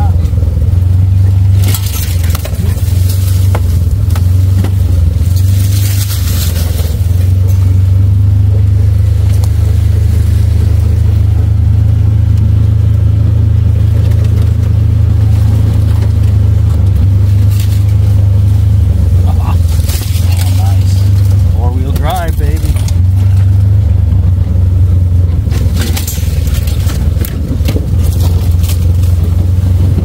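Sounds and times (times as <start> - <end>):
vehicle engine droning: 0.0 - 30.0
knocks and rattles: 1.3 - 11.7, 13.6 - 30.0.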